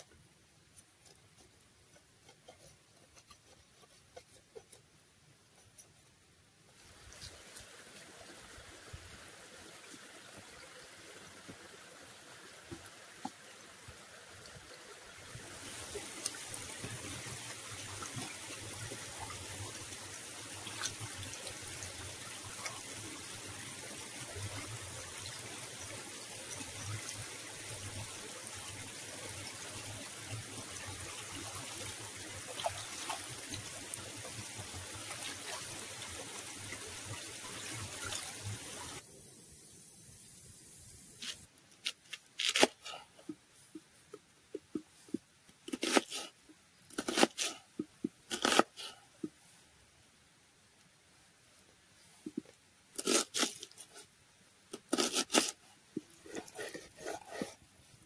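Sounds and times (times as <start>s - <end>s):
water trickling: 6.8s - 41.5s, 54.9s - 58.0s.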